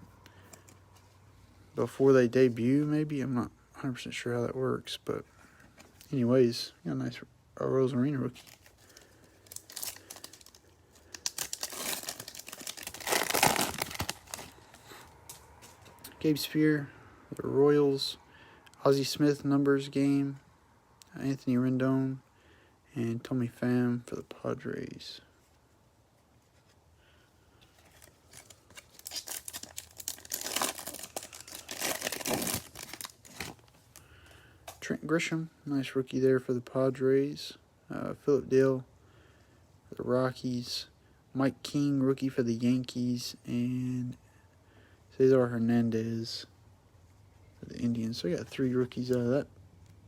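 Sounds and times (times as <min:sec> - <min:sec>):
foil wrapper crinkling and tearing: 0:08.4 - 0:15.4, 0:27.8 - 0:34.0.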